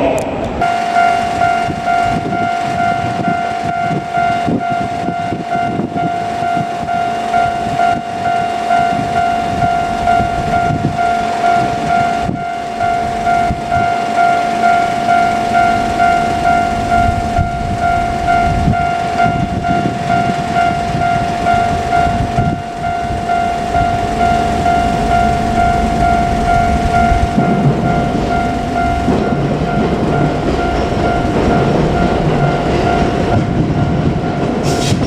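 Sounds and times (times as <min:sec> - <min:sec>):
train rumbling past: 0:00.0 - 0:35.0
level crossing bell ringing: 0:00.6 - 0:34.6
train wheel knocks: 0:27.0 - 0:35.0.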